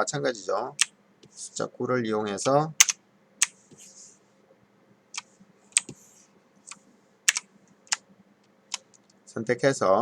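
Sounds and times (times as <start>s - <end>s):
keyboard and mouse clicks: 6.7s - 8.0s.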